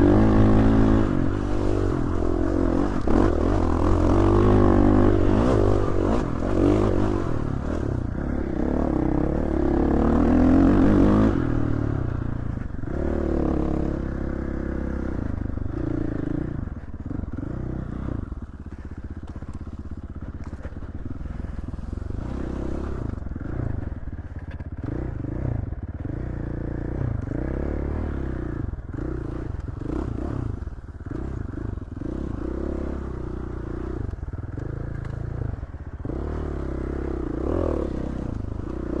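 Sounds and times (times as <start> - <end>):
dirt bike engine revving: 0.0 - 39.0
light clatter: 18.7 - 21.9.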